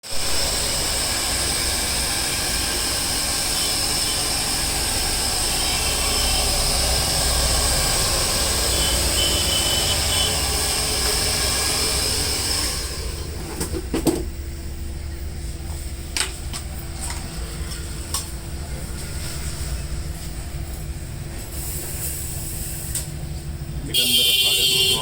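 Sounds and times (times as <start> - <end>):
hair dryer blowing: 0.0 - 13.8.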